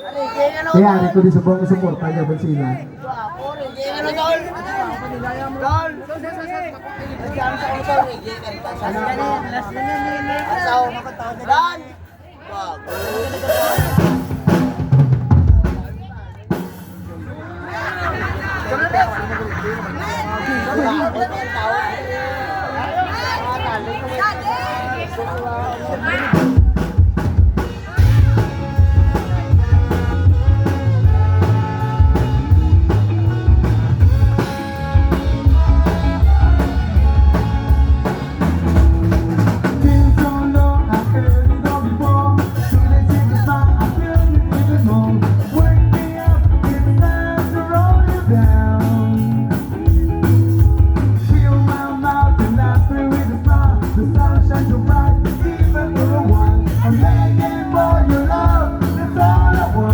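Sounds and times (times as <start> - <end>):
rock music with singing: 12.8 - 17.0, 26.0 - 59.9.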